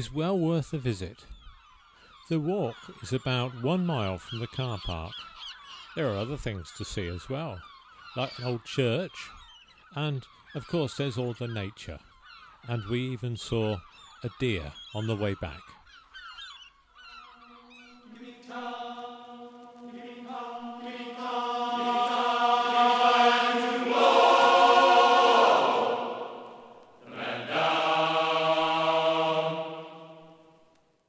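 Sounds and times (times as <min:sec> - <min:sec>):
sustained choir-like chords: 0:17.5 - 0:30.6.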